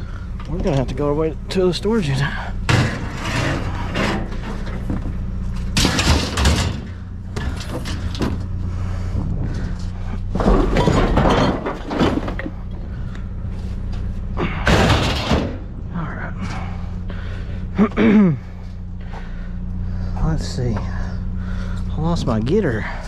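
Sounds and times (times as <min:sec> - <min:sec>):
steady low hum: 0:00.0 - 0:23.0
junk clattering in a dumpster: 0:02.2 - 0:15.8.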